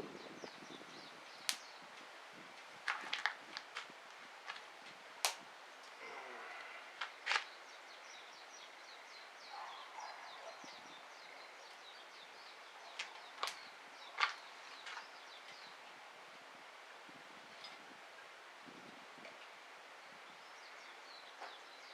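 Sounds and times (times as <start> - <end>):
wood fire crackling and popping: 1.4 - 5.9, 13.0 - 13.6.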